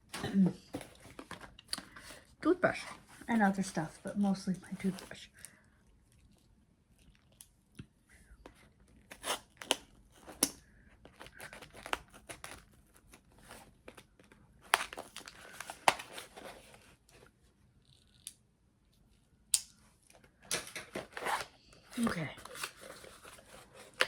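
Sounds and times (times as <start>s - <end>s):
packaging tearing and crinkling: 9.0s - 16.8s.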